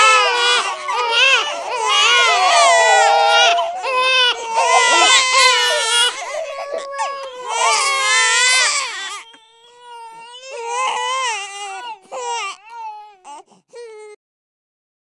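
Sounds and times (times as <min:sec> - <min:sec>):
babies crying: 0:00.0 - 0:13.9.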